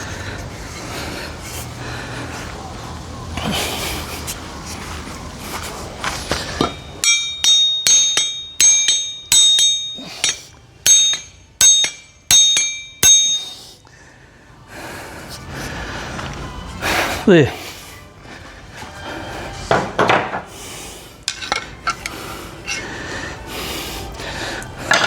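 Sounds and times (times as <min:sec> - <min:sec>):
ringing metallic blows: 0:06.6 - 0:13.6.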